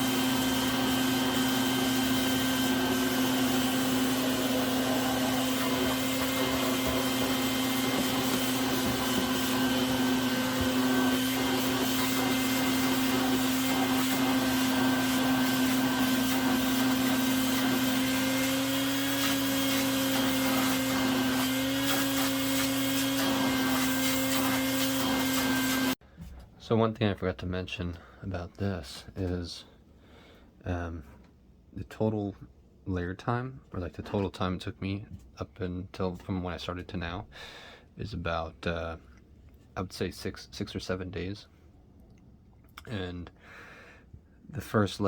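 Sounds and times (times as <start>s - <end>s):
electric motor whining: 0.0s - 26.0s.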